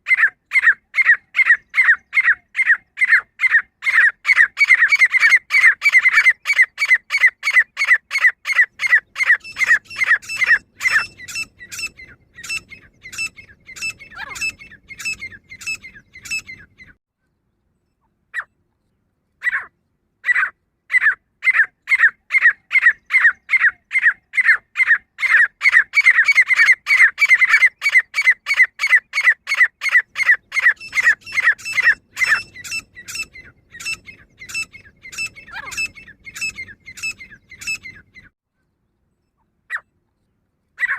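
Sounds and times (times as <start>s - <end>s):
francolin calling: 0.1s - 17.0s, 19.4s - 38.3s.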